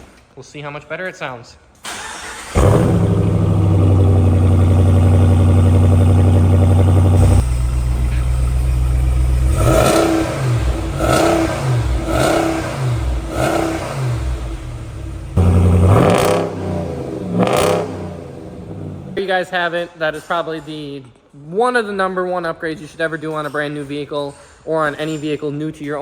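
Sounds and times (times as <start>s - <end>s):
engine revving: 2.0s - 19.2s
car engine idling: 2.3s - 19.2s.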